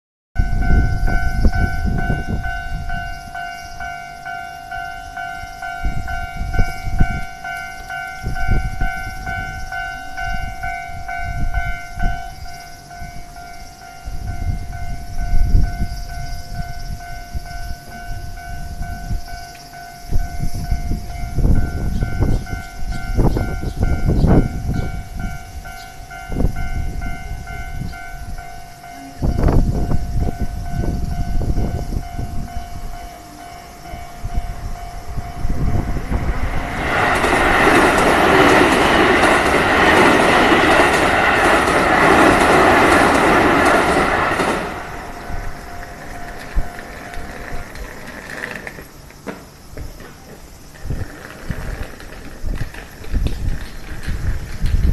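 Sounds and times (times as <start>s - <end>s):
level-crossing warning bell ringing: 0.4s - 49.0s
train rumbling over crossing: 0.4s - 54.9s.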